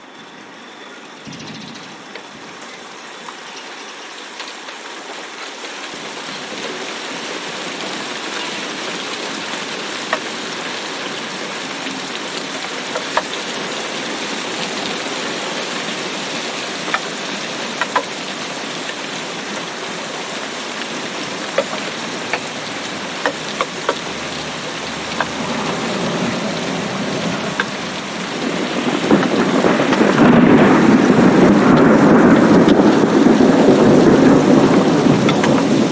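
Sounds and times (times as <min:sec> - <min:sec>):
steady rain falling: 0:00.0 - 0:35.9
sharp water drips: 0:01.0 - 0:35.9
thunder rolling: 0:20.9 - 0:35.9.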